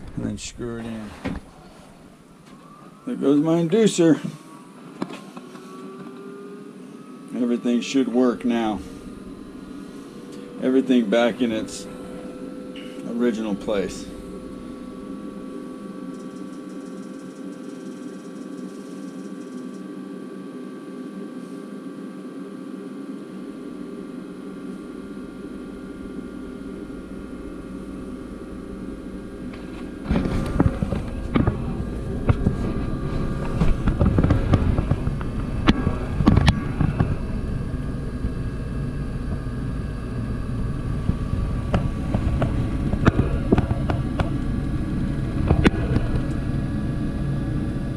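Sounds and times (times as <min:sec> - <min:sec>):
motor humming: 0:00.0 - 0:20.6, 0:21.4 - 0:47.9
low rumble with knocks: 0:08.4 - 0:16.4, 0:24.7 - 0:47.9.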